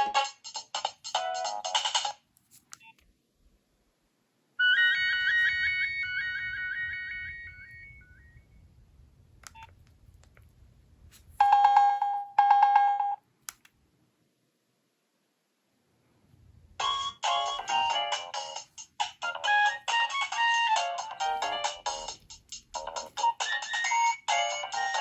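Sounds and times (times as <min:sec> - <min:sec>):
high chiming ringtone notes: 0:04.6 - 0:08.4.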